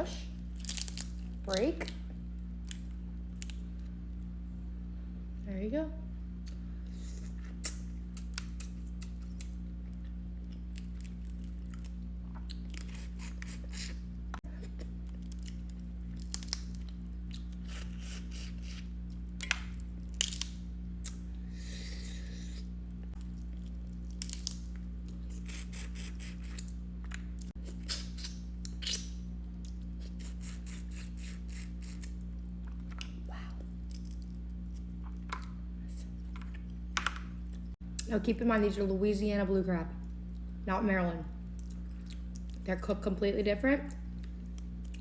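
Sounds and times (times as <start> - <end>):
steady low hum: 0.0 - 45.0
crab shell cracking: 0.6 - 2.0, 15.2 - 17.0, 17.7 - 21.2, 24.0 - 24.9.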